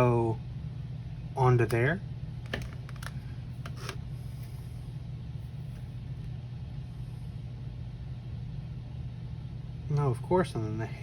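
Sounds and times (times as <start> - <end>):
low background hum: 0.0 - 11.0.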